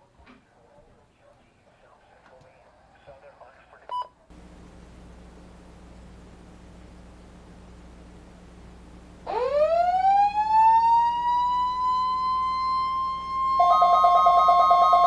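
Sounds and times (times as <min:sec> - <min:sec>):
siren rising to steady high tone: 0:09.2 - 0:15.0
rapidly pulsing alarm tone: 0:09.3 - 0:15.0.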